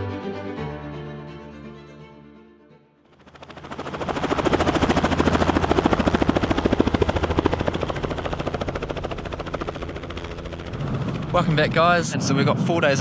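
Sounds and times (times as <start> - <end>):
helicopter rotor beating: 3.1 - 13.0.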